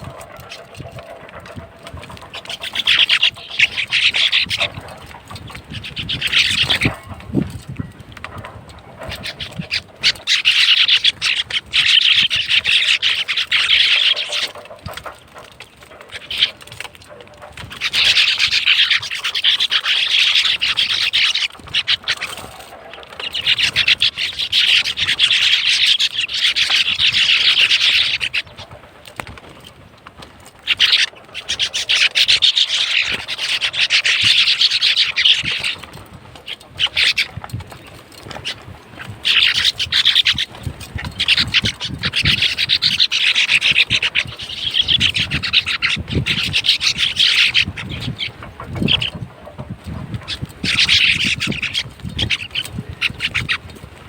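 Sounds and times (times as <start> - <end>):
sparrows chirping: 0.0 - 29.7, 30.5 - 54.0.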